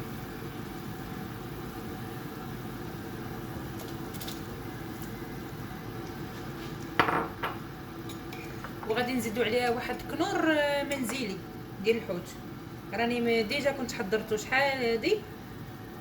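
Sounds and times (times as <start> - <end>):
soup boiling in a pot: 0.0 - 13.0, 14.3 - 16.0.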